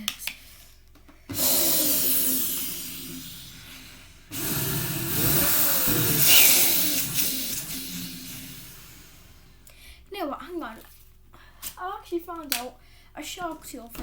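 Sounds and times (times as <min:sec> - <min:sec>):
vacuum cleaner rushing hiss: 0:01.3 - 0:09.7.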